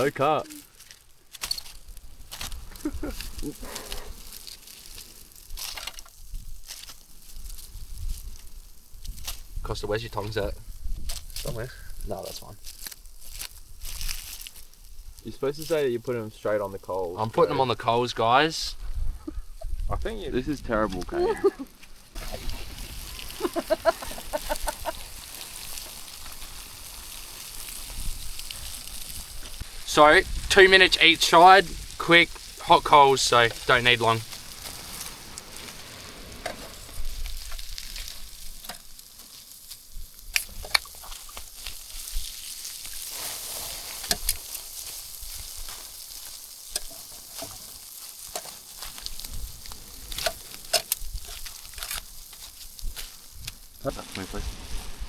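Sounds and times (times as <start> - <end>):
campfire crackling: 0.0 - 55.0
person laughing: 2.7 - 4.1, 21.1 - 21.7, 23.3 - 25.0
wind rumble on microphone: 18.8 - 21.0.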